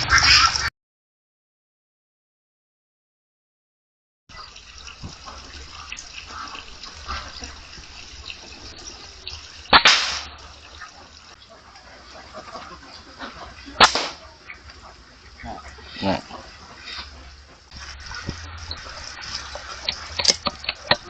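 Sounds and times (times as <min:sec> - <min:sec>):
air rifle shots: 0:09.7 - 0:10.3, 0:13.8 - 0:14.2.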